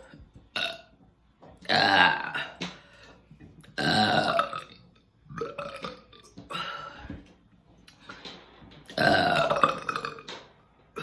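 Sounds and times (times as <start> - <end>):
person burping: 0.0 - 1.0, 1.6 - 3.0, 3.6 - 7.3, 8.9 - 10.4.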